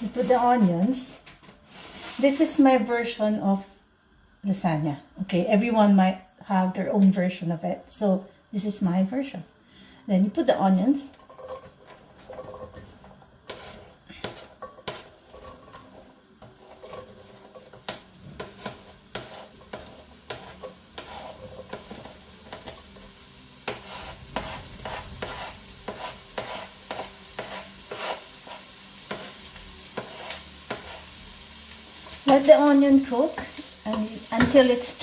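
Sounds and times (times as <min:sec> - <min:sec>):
onions sizzling in oil: 0:10.2 - 0:35.0
utensil clicking and scraping pan: 0:11.2 - 0:23.0, 0:23.6 - 0:31.1.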